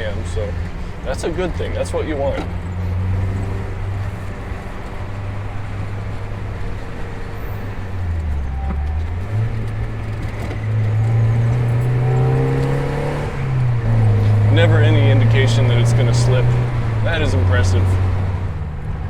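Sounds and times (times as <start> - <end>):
car engine running: 0.0 - 19.0
road noise: 0.0 - 19.0.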